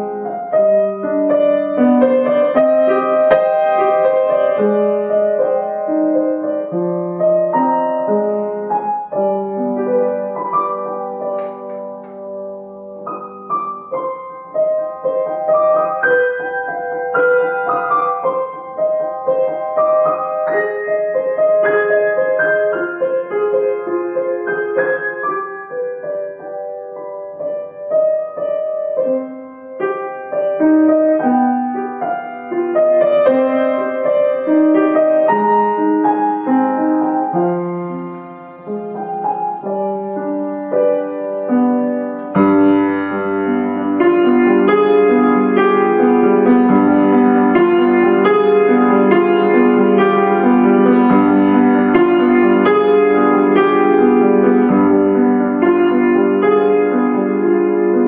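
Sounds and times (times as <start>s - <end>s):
gentle solo piano piece: 0.0s - 58.0s.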